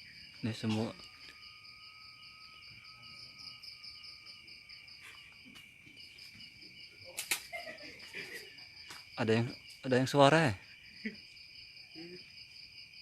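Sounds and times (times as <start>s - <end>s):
crickets chirping: 0.0s - 13.0s
sharp click: 7.2s - 7.5s.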